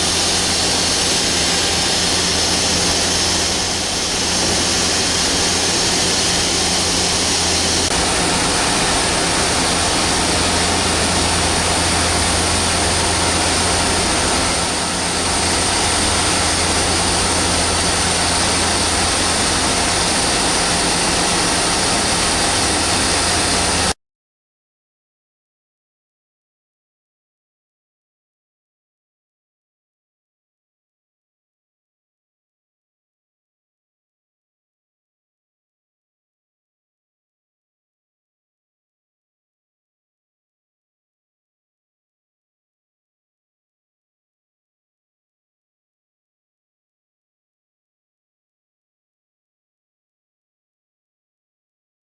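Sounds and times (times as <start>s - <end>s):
lathe machine hum: 0.0s - 24.0s.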